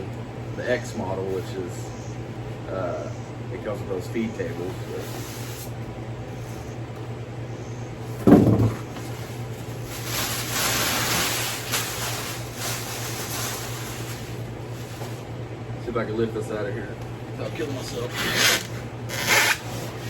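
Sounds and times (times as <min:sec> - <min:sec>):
fan humming: 0:00.0 - 0:20.0
heavy thump: 0:08.2 - 0:08.9
cardboard rustling and scraping: 0:08.4 - 0:15.3, 0:17.6 - 0:20.0.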